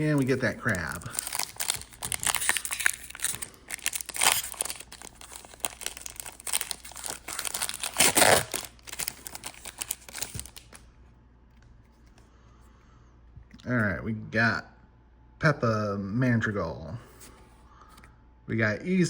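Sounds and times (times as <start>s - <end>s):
foil wrapper tearing and crinkling: 0.0s - 10.8s.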